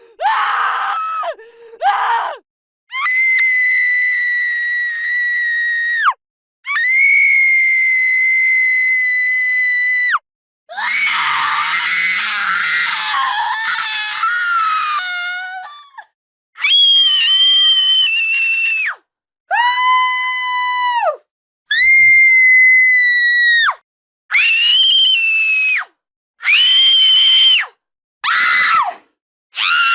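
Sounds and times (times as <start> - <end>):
woman screaming: 10.7 - 15.9.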